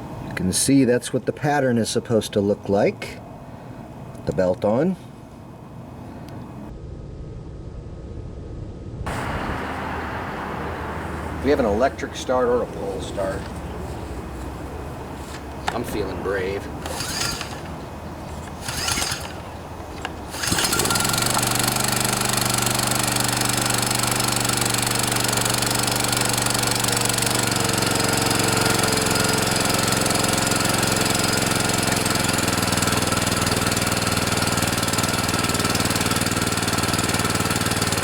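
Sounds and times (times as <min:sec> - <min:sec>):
small engine running: 0:09.1 - 0:38.0
engine cranking: 0:15.3 - 0:38.0.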